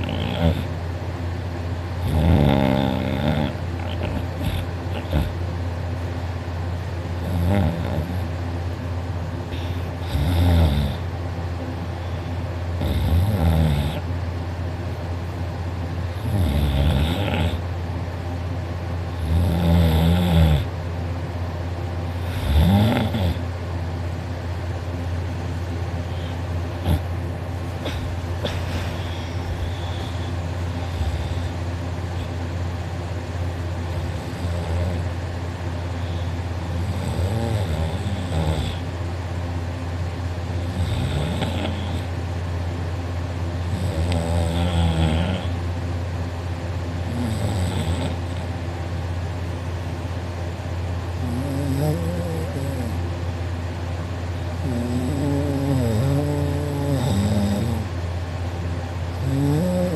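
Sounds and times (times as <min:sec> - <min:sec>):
man snoring loudly: 0:00.0 - 0:00.7, 0:02.0 - 0:05.4, 0:07.2 - 0:08.3, 0:09.5 - 0:11.0, 0:12.8 - 0:14.0, 0:16.2 - 0:17.6, 0:19.2 - 0:20.7, 0:22.2 - 0:23.4, 0:34.0 - 0:35.1, 0:36.8 - 0:38.9, 0:40.6 - 0:42.1, 0:43.7 - 0:45.6, 0:47.1 - 0:48.4, 0:51.2 - 0:53.0, 0:54.6 - 0:57.9, 0:59.2 - 0:59.9
steady low hum: 0:00.0 - 0:59.9.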